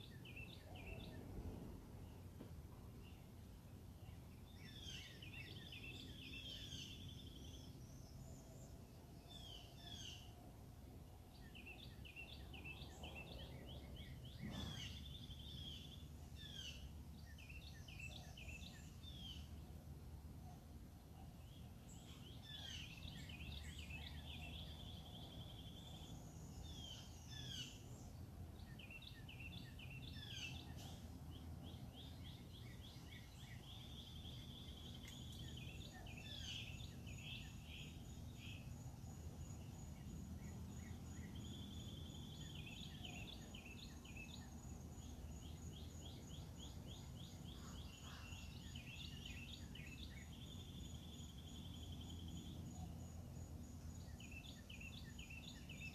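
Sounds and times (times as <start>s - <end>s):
birds singing and chirping: 0.0s - 1.4s, 4.0s - 10.4s, 11.2s - 19.7s, 20.6s - 55.9s
low steady rumble: 0.0s - 9.4s.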